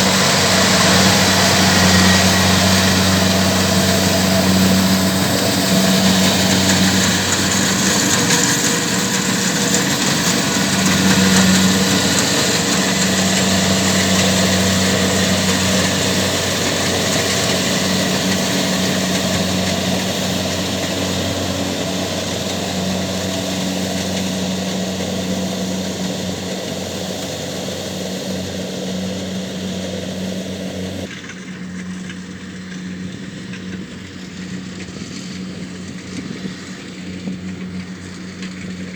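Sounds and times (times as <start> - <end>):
hiss of threshing machinery: 0.0 - 31.1
diesel engine hum: 0.0 - 38.9.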